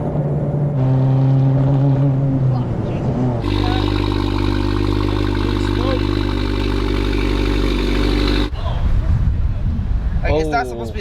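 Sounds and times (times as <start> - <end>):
car engine running steadily: 3.4 - 8.5.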